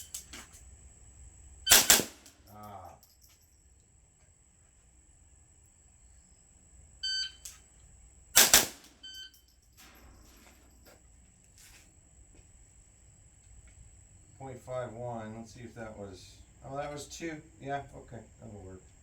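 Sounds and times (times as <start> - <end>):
gunshots: 1.7 - 2.3, 8.4 - 8.9
shot timer beeps: 7.0 - 7.5, 9.0 - 9.4.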